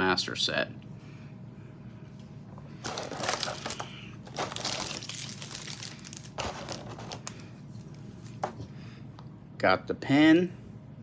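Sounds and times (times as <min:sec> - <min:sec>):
packaging crinkling: 0:02.8 - 0:08.6.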